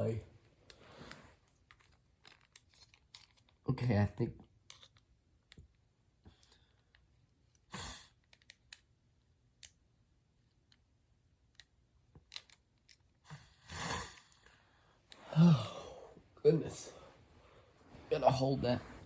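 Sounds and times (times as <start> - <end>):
plastic toy parts clicking: 1.7 - 3.6, 4.6 - 5.7, 8.2 - 8.9, 11.5 - 13.1
person exhaling: 13.6 - 16.2.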